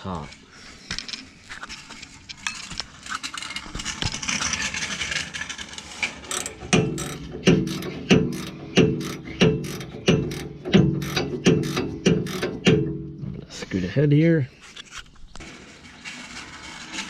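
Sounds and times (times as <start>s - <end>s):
wrench scraping on metal: 4.4s - 13.1s
wrench ratchet clicks: 6.2s - 12.8s.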